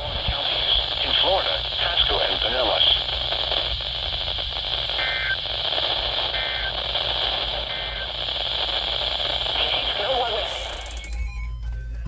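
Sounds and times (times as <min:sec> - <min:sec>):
radio static and hiss: 0:00.0 - 0:11.3
digital data bursts: 0:04.6 - 0:11.8.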